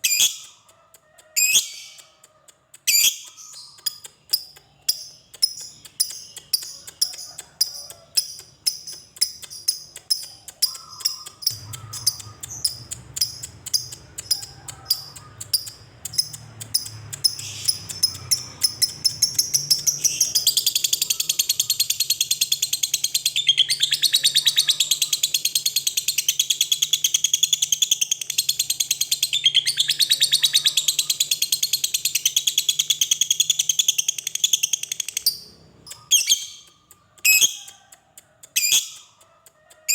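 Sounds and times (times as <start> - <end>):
lovebird chirping and trilling: 0.0 - 0.6, 1.4 - 2.1, 2.9 - 37.8, 38.6 - 39.2.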